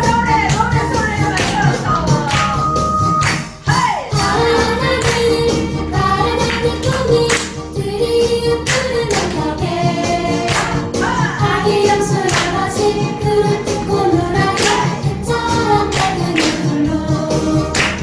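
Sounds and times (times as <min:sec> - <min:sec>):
body percussion claps and slaps: 0:00.0 - 0:03.7, 0:05.0 - 0:05.4, 0:06.4 - 0:07.7, 0:08.6 - 0:09.5, 0:10.4 - 0:11.0, 0:12.2 - 0:12.8, 0:14.5 - 0:15.1, 0:15.9 - 0:16.8, 0:17.7 - 0:18.0
song with accompaniment: 0:00.0 - 0:18.0.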